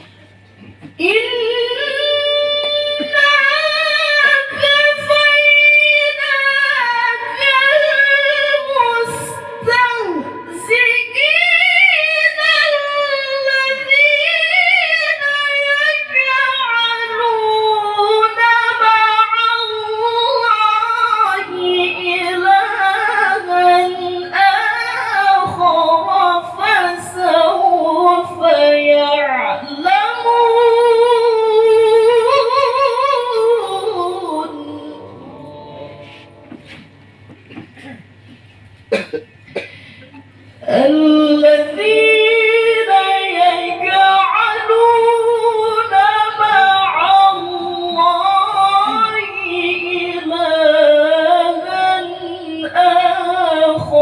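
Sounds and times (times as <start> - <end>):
person reciting melodically: 1.0 - 38.0, 40.2 - 54.0
breaths: 39.5 - 40.6.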